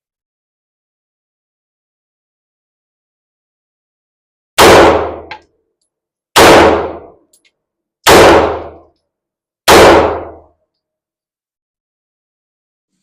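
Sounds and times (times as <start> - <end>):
pistol shots: 4.6 - 5.4, 6.4 - 7.2, 8.0 - 8.8, 9.7 - 10.4.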